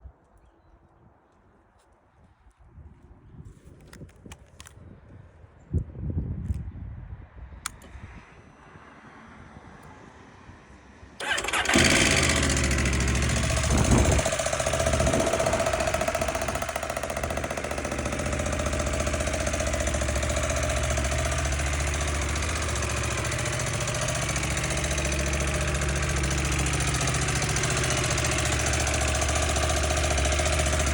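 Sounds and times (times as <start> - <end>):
engine valve noise: 11.2 - 30.9
motorcycle engine starting and idling: 11.2 - 30.9.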